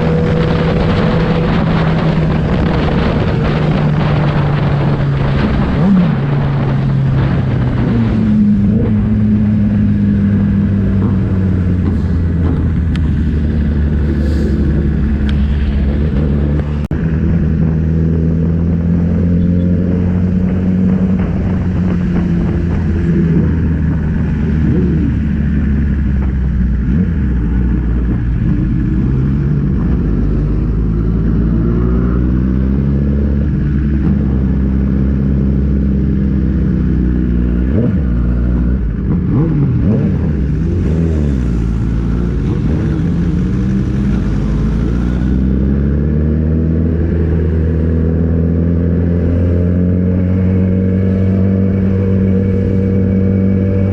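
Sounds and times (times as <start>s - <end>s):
motorcycle engine revving: 0.0s - 53.9s
wind and road noise: 0.0s - 53.9s.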